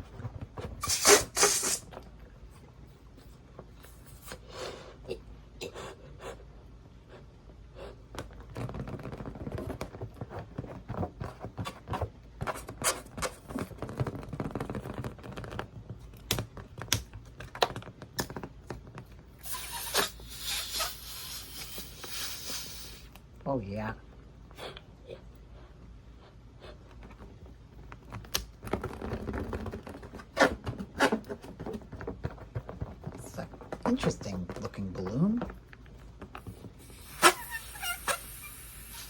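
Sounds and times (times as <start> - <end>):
balloon rubber rubbing and clicking: 0.0 - 2.1, 8.0 - 23.2, 26.7 - 39.0
puffs of breath into balloon: 0.8 - 1.9, 19.4 - 23.2, 36.8 - 39.0.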